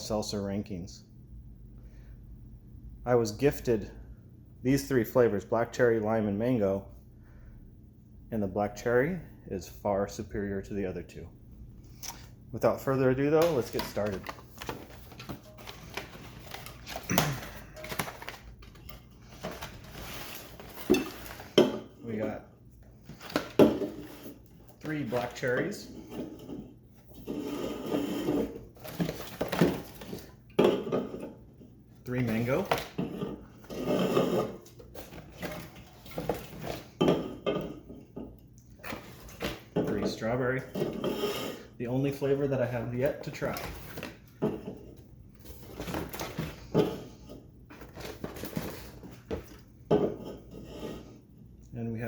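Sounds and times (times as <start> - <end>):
cardboard rustling: 13.1 - 22.2, 28.3 - 30.4, 42.8 - 44.3, 45.4 - 46.8, 47.7 - 49.7
cans rattling: 13.2 - 21.8.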